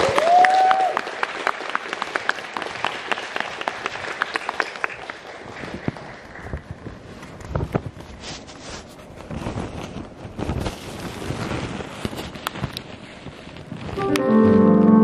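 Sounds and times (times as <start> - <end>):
person cheering: 0.0 - 1.0
audience applauding: 0.0 - 6.6.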